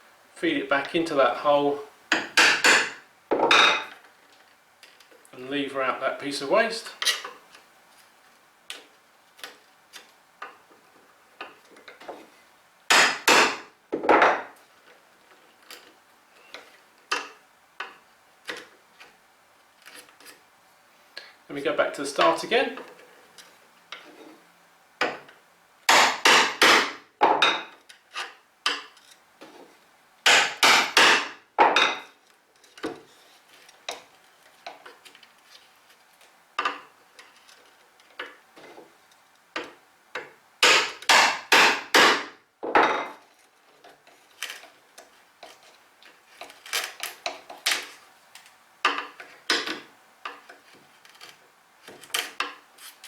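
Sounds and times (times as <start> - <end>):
hammer striking chisel: 2.1 - 3.9, 12.9 - 14.4, 25.9 - 27.7, 30.3 - 32.0, 40.6 - 42.3.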